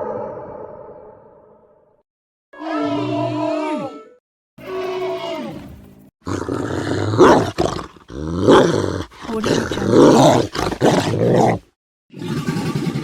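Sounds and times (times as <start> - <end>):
cartoon creature growling roars: 2.6 - 4.9, 6.3 - 13.0.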